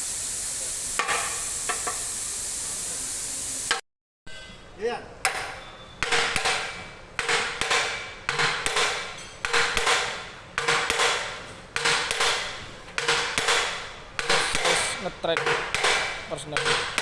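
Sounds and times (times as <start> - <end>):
hammer striking metal: 5.2 - 17.0.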